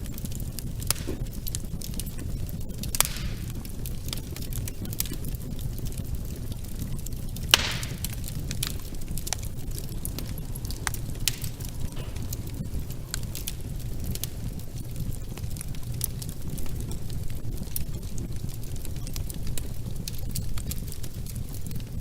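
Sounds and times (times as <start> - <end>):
steady low rumble: 0.0 - 22.0
wood fire crackling: 0.0 - 22.0
sharp pops: 0.8 - 3.7, 7.4 - 14.4.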